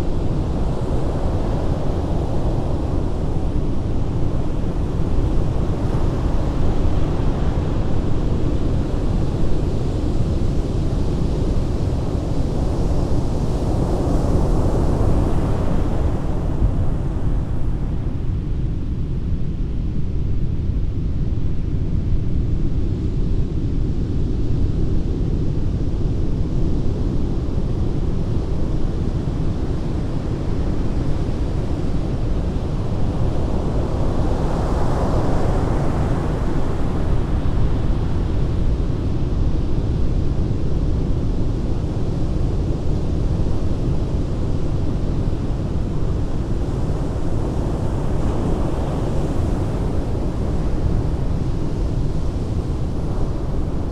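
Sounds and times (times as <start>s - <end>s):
waves rumbling: 44.8s - 53.9s.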